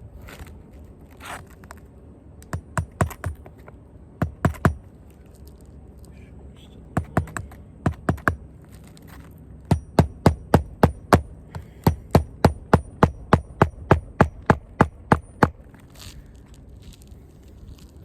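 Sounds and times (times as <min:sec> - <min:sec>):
hammer driving nails into shingles: 0:02.4 - 0:03.5, 0:04.2 - 0:04.8, 0:07.0 - 0:08.4, 0:09.7 - 0:15.6.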